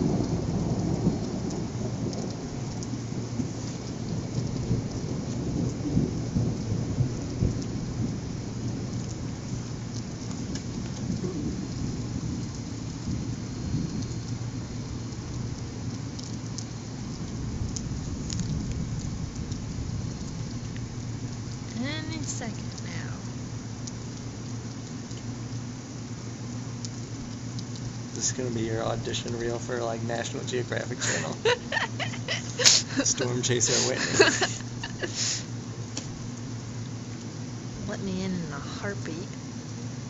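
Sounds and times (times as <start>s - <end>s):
thunder rumbling: 0.0s - 24.5s, 27.0s - 36.8s
heavy rain: 0.0s - 40.0s.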